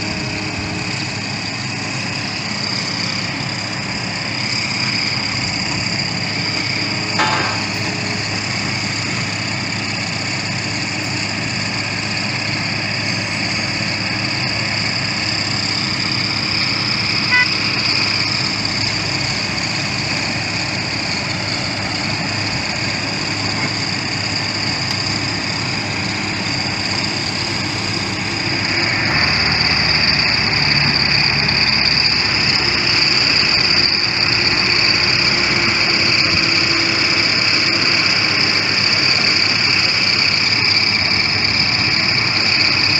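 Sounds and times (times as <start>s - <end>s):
heavy construction machinery engine: 0.0s - 42.9s
high machine whine: 0.0s - 42.9s.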